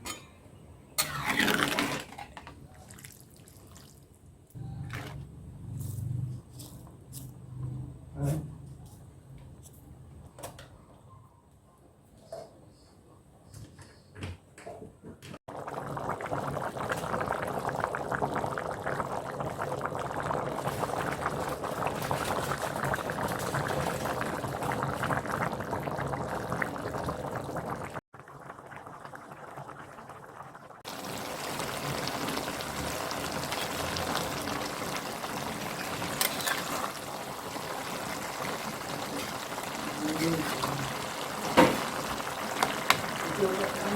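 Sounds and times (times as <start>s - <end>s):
liquid sizzling in a pan: 30.8s - 43.9s.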